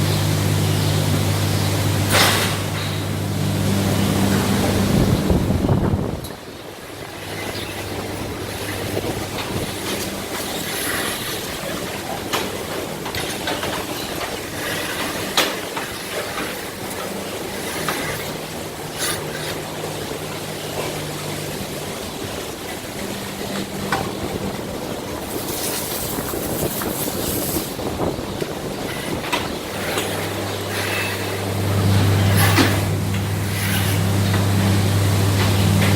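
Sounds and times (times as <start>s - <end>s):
milking machinery humming: 0.0s - 35.9s
sharp mechanical clicks and clanks: 25.2s - 35.9s.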